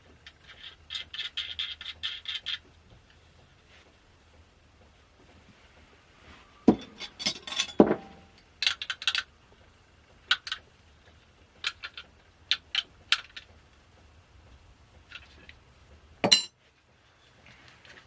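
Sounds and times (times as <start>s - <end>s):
small metal parts clinking: 6.7s - 9.2s.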